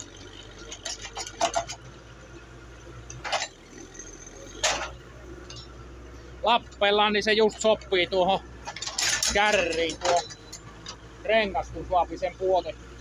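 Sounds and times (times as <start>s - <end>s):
metallic clanking and knocking: 0.6s - 2.0s, 3.1s - 3.6s, 4.5s - 5.8s, 8.6s - 11.1s.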